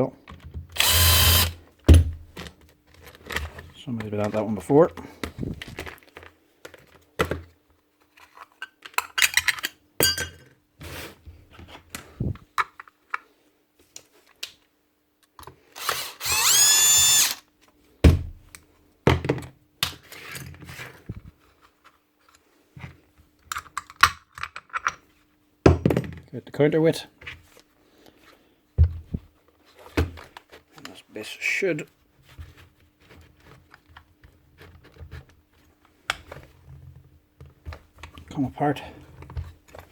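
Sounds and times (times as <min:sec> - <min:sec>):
cordless drill whirring: 0:00.8 - 0:01.6, 0:15.7 - 0:17.4
screws and tools clicking: 0:00.8 - 0:01.6, 0:15.8 - 0:17.4.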